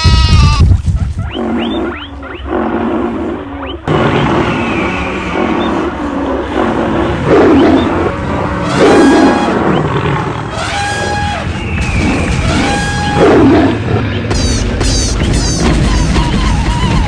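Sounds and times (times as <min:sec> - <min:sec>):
animal cries: 0:00.0 - 0:00.7
low rumble: 0:00.0 - 0:17.0
animal growls and roars: 0:01.3 - 0:14.2.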